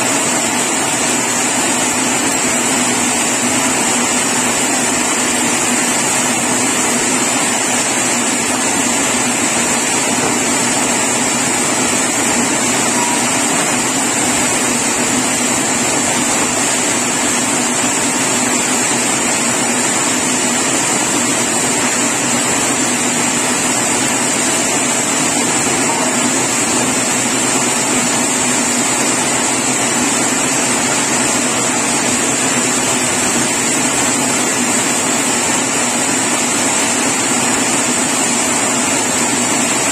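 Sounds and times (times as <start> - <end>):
sawmill saw running: 0.0 - 39.9
high saw whine: 9.6 - 16.6.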